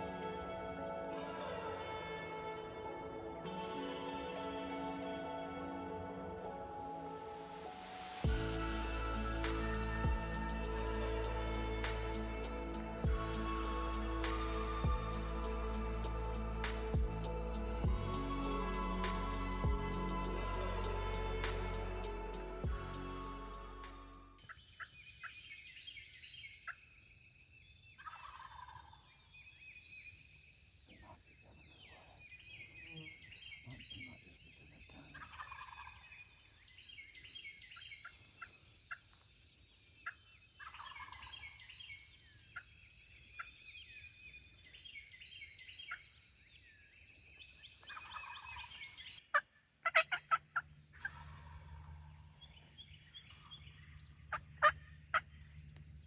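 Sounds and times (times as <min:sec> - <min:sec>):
songbirds chirping: 0:00.0 - 0:56.0
turkey gobbling: 0:49.8 - 0:50.4, 0:51.0 - 0:51.9.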